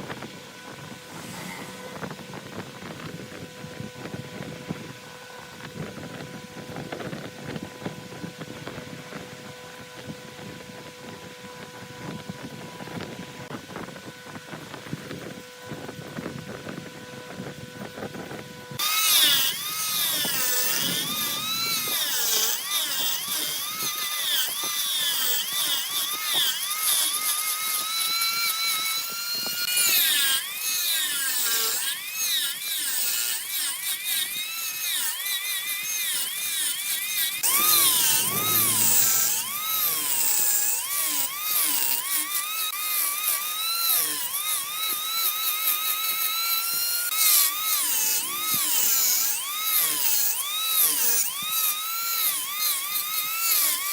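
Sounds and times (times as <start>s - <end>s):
motor hum: 0.0s - 31.8s, 37.3s - 44.0s, 44.6s - 52.2s
wood lathe tool whining: 18.6s - 53.9s.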